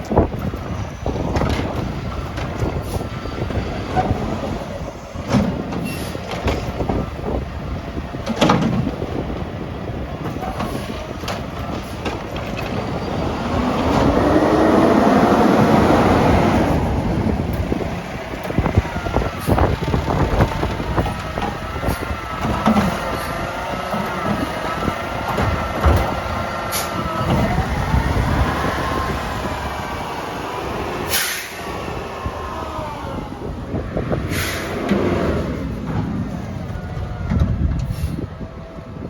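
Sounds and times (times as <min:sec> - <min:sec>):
garbage truck engine revving: 0:00.0 - 0:39.0
wind rumble on microphone: 0:00.0 - 0:39.0
clanks and bangs of cart handling: 0:05.2 - 0:07.2, 0:08.2 - 0:09.2, 0:18.4 - 0:27.6.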